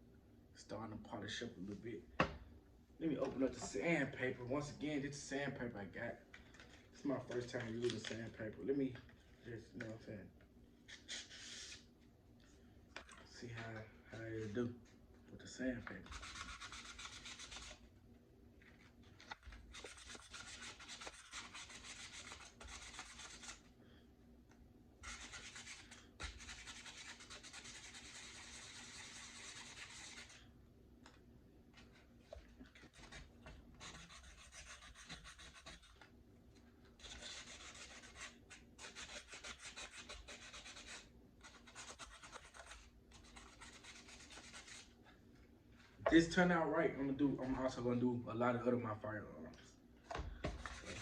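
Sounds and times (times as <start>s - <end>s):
sandpaper rubbing on metal: 16.0s - 17.8s, 19.8s - 23.6s, 25.0s - 30.4s, 33.8s - 36.0s, 37.0s - 44.9s.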